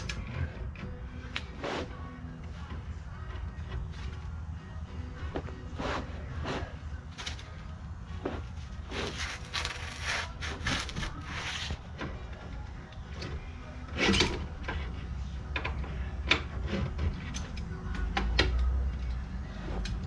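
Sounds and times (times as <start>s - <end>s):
hand tools scraping metal: 8.4s - 11.8s.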